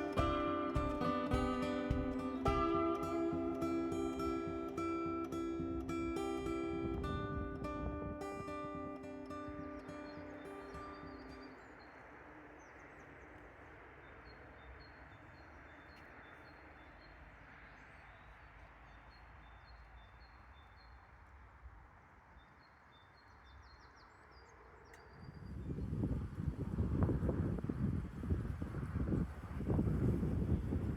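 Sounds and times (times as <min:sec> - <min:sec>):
wind buffeting microphone: 0:00.0 - 0:13.3, 0:25.2 - 0:30.9
small bird chirping: 0:08.4 - 0:21.1.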